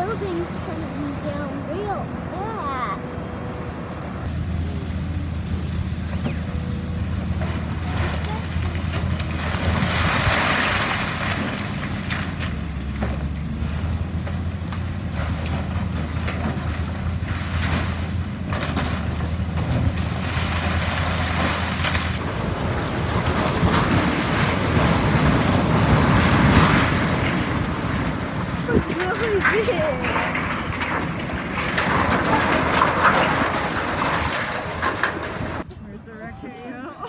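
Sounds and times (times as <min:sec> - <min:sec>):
heavy machinery engine drone: 0:00.0 - 0:37.0
breaking masonry clattering: 0:05.4 - 0:35.7
wind buffeting microphone: 0:21.7 - 0:37.0.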